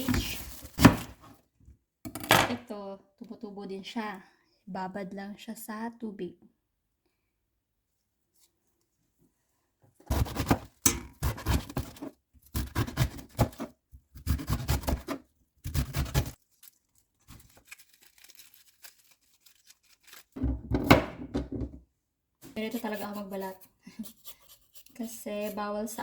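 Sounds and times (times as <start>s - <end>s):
cabbage leaves tearing: 14.2s - 20.4s
leaves rustling: 16.4s - 20.4s.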